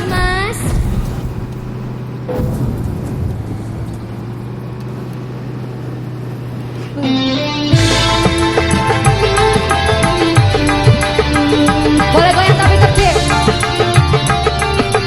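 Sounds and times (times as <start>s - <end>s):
bus engine drone: 0.0s - 15.0s
music playing: 7.0s - 15.0s.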